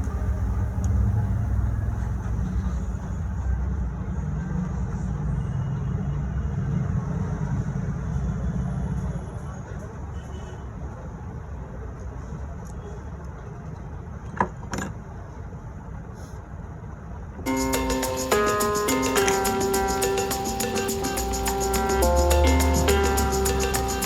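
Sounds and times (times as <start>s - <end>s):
low steady rumble: 0.0s - 3.8s.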